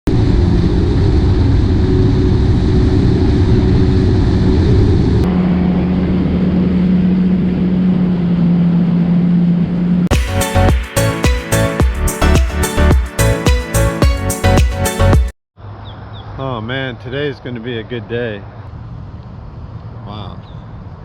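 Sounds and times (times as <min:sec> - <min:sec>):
jet ski engine running: 0:00.1 - 0:09.2.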